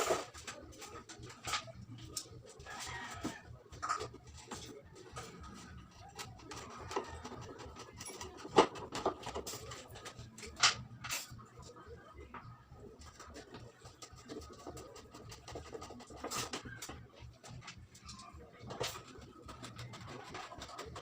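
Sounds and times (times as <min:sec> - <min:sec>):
objects clicking and knocking: 0:00.0 - 0:11.6, 0:12.2 - 0:21.0.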